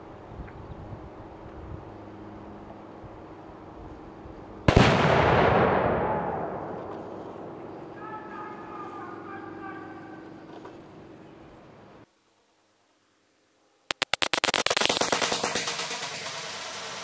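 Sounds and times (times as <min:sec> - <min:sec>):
explosion boom and rumble: 0:04.7 - 0:07.5
rifle shot: 0:04.7 - 0:07.5, 0:13.9 - 0:17.0.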